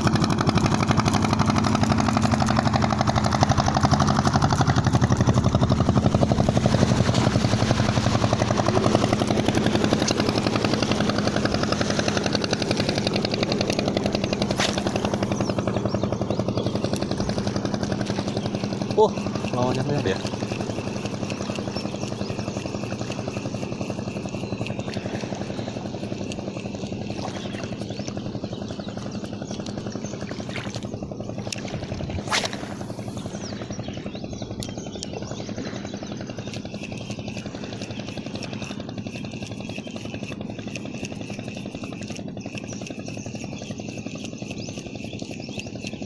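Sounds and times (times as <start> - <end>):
small engine puttering: 0.0 - 46.0
sharp click: 32.2 - 32.8.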